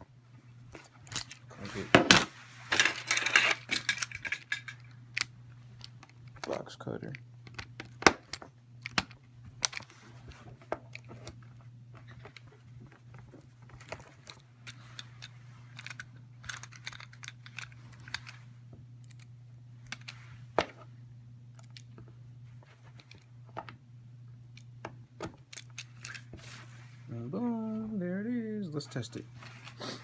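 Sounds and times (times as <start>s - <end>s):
steady low hum: 0.0s - 30.0s
hands working cable and plug: 0.7s - 20.9s, 21.5s - 23.8s, 24.5s - 26.6s.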